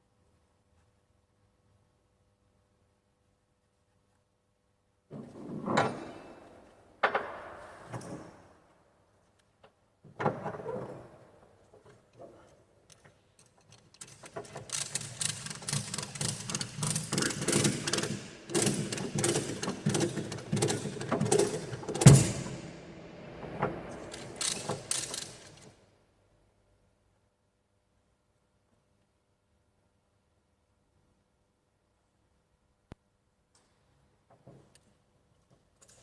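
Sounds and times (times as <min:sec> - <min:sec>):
ratchet strap clicking: 0:12.9 - 0:22.2, 0:24.1 - 0:25.6.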